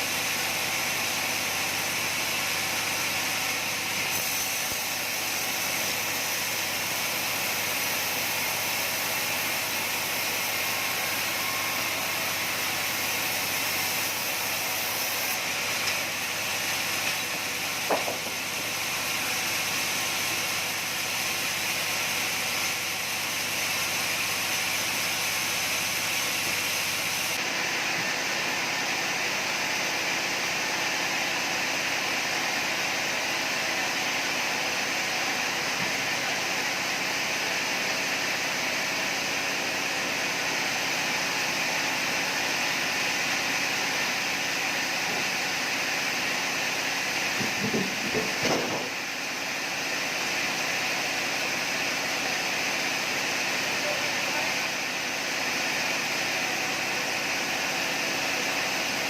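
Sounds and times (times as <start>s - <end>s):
sawmill machinery rushing noise: 0.0s - 59.0s
brief knock: 17.9s - 18.3s.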